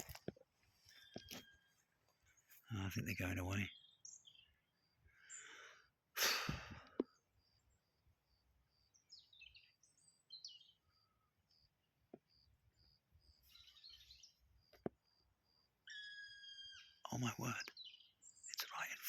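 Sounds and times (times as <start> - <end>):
birds calling with high pips: 0.0 - 5.8, 8.9 - 12.0, 12.8 - 14.5, 15.8 - 19.0.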